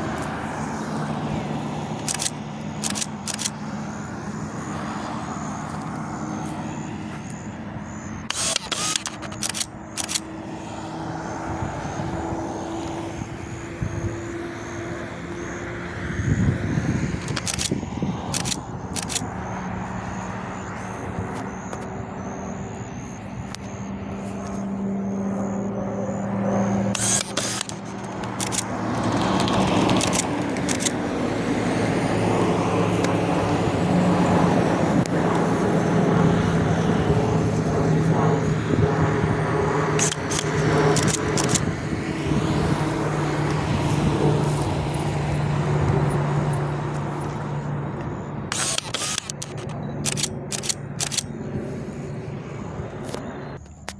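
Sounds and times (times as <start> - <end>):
propeller plane droning: 0.0 - 53.9
sharp clicks: 1.8 - 3.7, 7.2 - 10.3, 17.2 - 19.4, 26.9 - 31.1, 39.9 - 41.8, 48.0 - 51.6.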